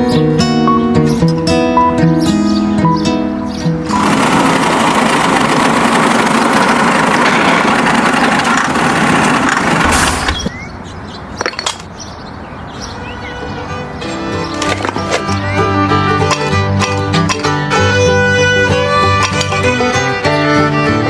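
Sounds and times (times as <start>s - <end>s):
engine running loudly: 3.7s - 10.4s.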